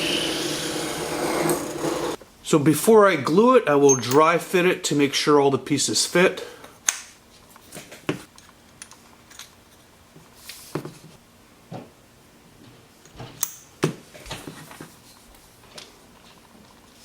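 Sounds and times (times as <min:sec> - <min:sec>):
light clicks and knocks of parts: 0:06.6 - 0:09.6.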